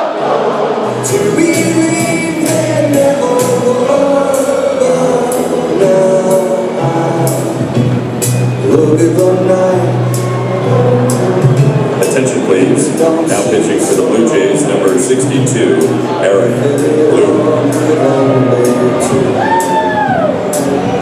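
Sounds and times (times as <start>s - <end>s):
person singing: 0.0s - 8.0s, 8.6s - 21.0s.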